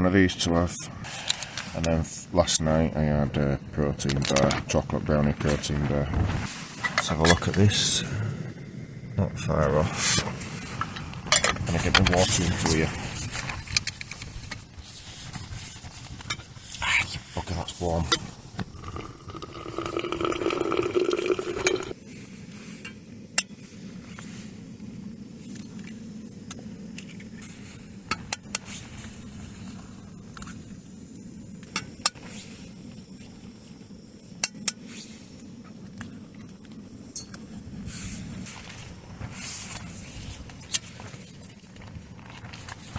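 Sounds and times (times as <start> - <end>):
low background rush: 0.0 - 42.9
hot water pouring: 18.6 - 22.0.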